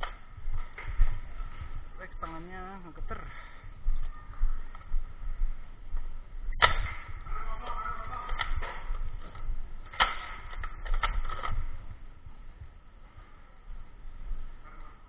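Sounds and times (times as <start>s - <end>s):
low rumble: 0.0s - 15.0s
foam dart blaster pops: 6.6s - 7.0s.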